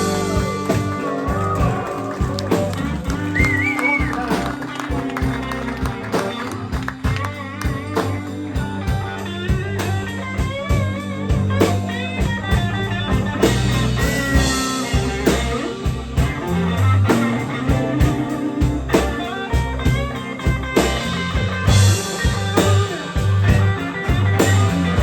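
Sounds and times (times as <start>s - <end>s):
bass guitar: 0.0s - 25.0s
drums: 0.0s - 25.0s
electric guitar solo: 0.0s - 25.0s.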